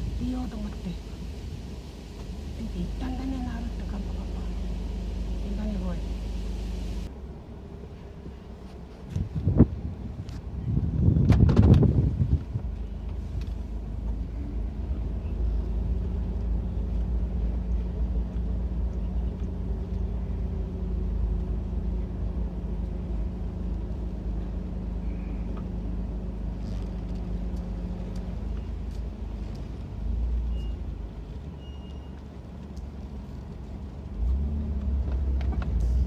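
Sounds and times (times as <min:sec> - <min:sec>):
loud rumble: 0:00.0 - 0:07.1
vehicle engine humming: 0:00.0 - 0:36.0.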